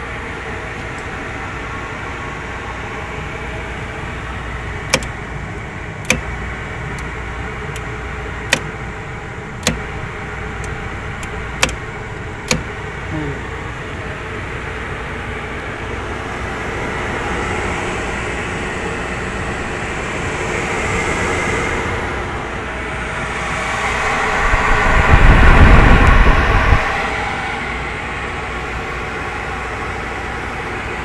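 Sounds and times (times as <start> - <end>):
dehumidifier fan rushing air: 0.0 - 31.0
loud low rumble: 8.8 - 30.3.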